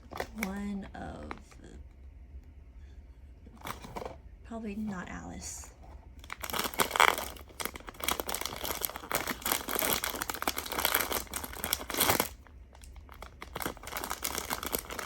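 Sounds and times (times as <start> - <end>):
wrapping crinkling and tearing: 0.0 - 1.6, 6.2 - 15.0.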